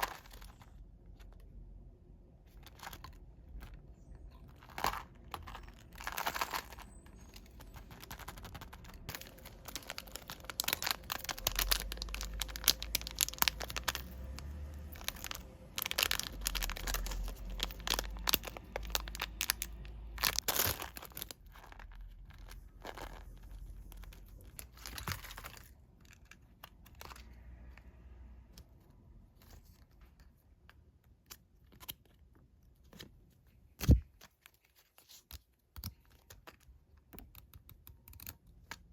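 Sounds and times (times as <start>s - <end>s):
packaging crinkling and tearing: 4.5s - 26.3s.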